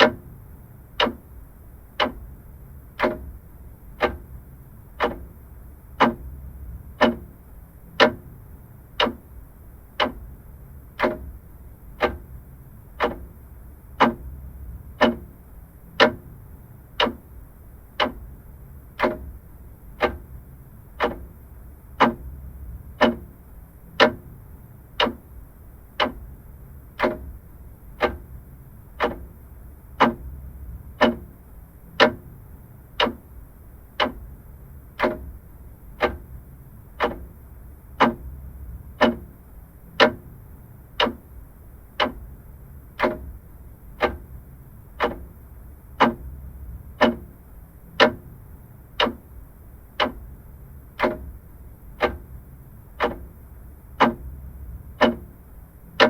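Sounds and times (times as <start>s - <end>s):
mechanical clock ticking: 0.0s - 56.0s.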